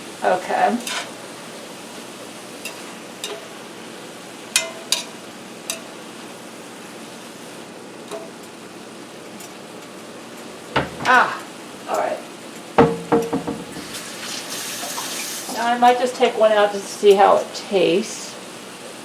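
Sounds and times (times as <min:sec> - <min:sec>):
squash frying in a pan: 0:00.0 - 0:19.0
utensil clinking against pan: 0:04.6 - 0:05.9, 0:10.8 - 0:11.3, 0:12.8 - 0:13.9.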